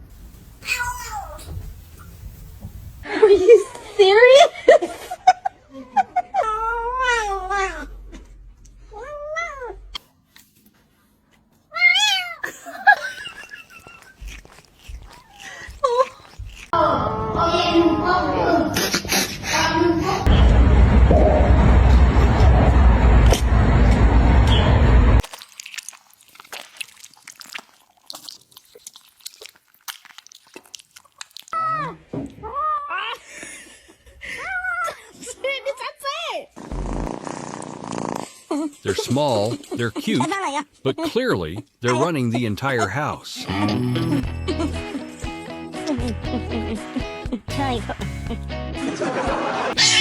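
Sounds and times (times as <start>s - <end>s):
high-pitched cry: 0.6s - 1.6s, 11.7s - 12.5s, 49.8s - 50.0s
kitten meowing: 0.6s - 1.6s, 49.8s - 50.0s
crunching and clicking: 13.0s - 16.8s, 25.2s - 31.6s.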